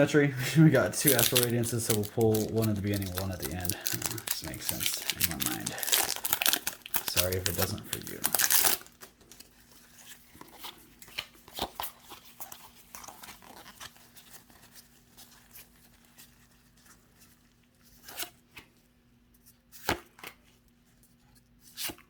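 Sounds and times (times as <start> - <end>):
trading cards clicking and tapping: 1.0 - 6.3.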